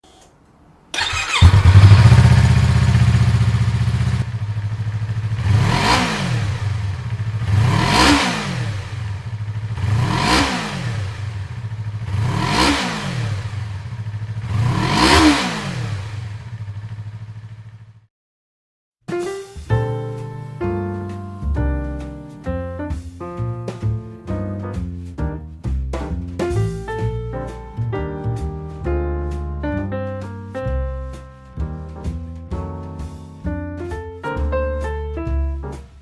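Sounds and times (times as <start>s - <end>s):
motorcycle engine idling and revving: 1.0s - 18.1s.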